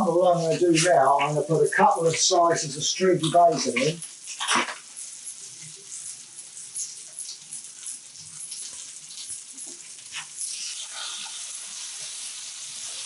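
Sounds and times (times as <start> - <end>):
meat sizzling in a pan: 0.0 - 13.0.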